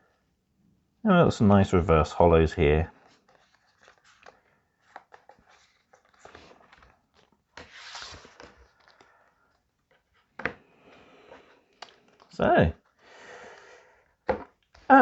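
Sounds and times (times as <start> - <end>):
papery rustle: 2.9 - 10.1.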